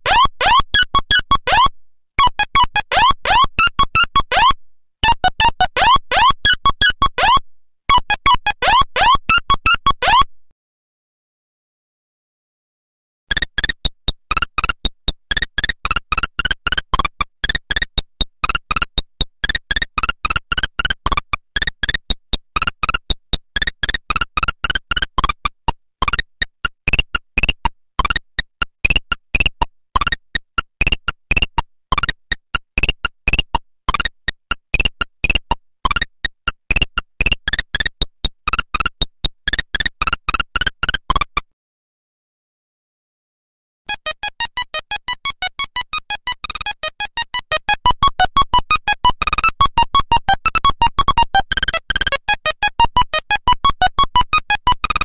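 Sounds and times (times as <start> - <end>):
electronic beeping ringtone: 0.1 - 10.2, 43.9 - 55.0.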